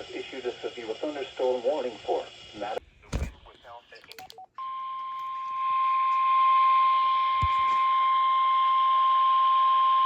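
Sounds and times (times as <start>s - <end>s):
radio static hiss: 0.0s - 4.1s
low thump: 3.0s - 3.5s.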